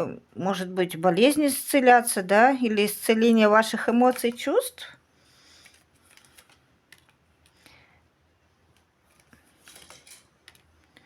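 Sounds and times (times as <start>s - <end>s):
cards clicking and rustling: 4.1s - 4.5s, 5.5s - 7.6s, 8.8s - 11.0s.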